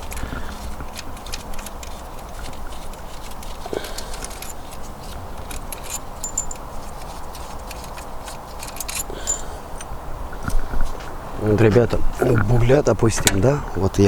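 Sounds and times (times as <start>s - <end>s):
metallic clinks of bolts: 1.0s - 10.0s.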